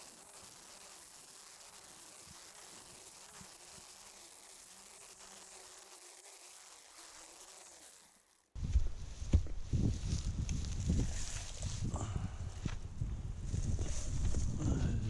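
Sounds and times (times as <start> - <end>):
flying insect buzzing: 0.0 - 8.6, 10.1 - 15.0
outdoor background hiss: 0.0 - 15.0.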